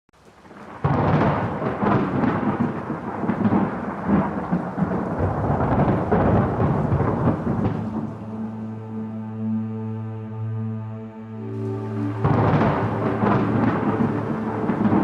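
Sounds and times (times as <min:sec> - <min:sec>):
steady rain: 0:00.2 - 0:10.5, 0:11.1 - 0:15.0
thunder rumbling: 0:00.4 - 0:08.9, 0:11.5 - 0:15.0.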